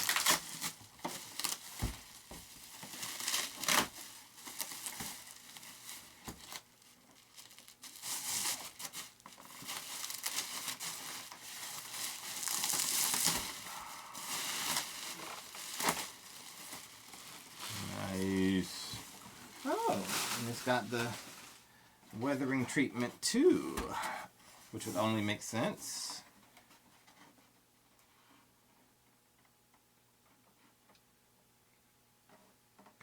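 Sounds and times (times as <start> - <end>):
packaging crinkling and tearing: 0.0 - 21.7.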